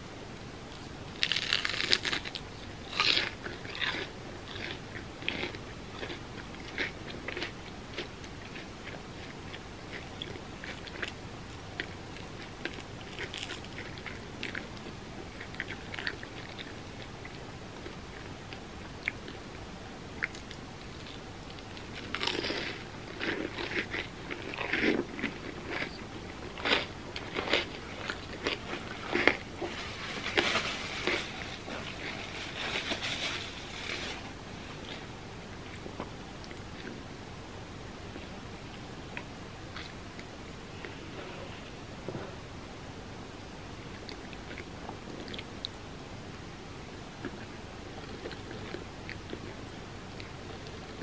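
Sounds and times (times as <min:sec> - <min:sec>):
crunching crispy food: 0:00.7 - 0:11.2, 0:11.8 - 0:19.4, 0:20.2 - 0:35.1.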